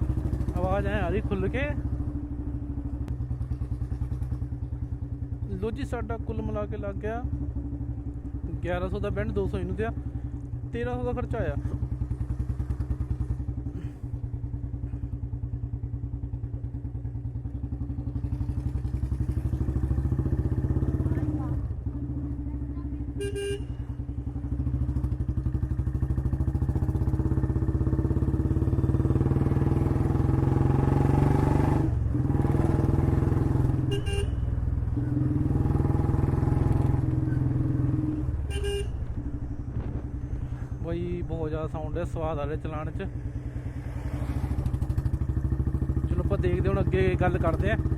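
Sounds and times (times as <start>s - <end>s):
motorcycle engine running: 0.0s - 47.9s
motorcycle engine exhaust thump: 38.5s - 40.7s.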